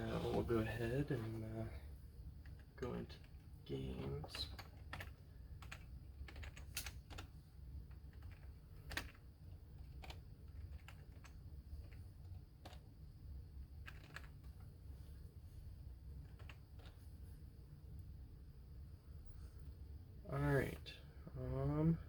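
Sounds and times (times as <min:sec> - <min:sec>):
steady low hum: 0:00.0 - 0:22.0
keyboard typing: 0:04.2 - 0:12.8, 0:13.8 - 0:14.6, 0:16.2 - 0:17.0.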